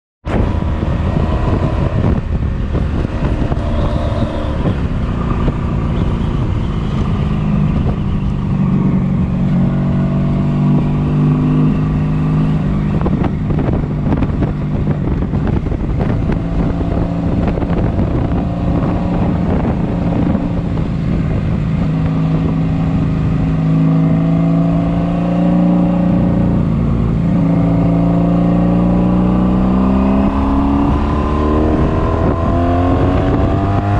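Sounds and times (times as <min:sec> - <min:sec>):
wind rumble on microphone: 0:00.2 - 0:33.9
motorcycle engine revving: 0:00.3 - 0:33.9.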